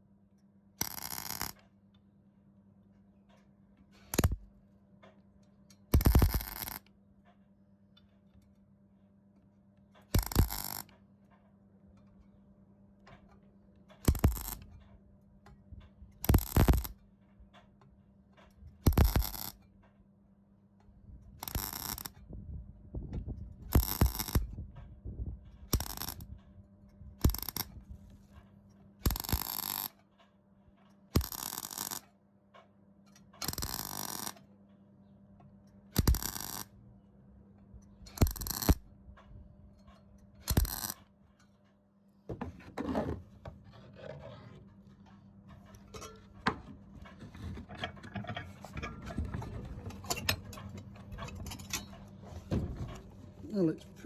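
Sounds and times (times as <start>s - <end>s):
welding arc crackle: 40.5s - 41.0s.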